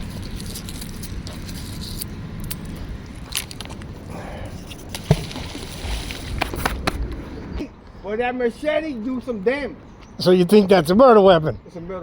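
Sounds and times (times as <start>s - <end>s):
wind rumble on microphone: 5.4s - 8.1s.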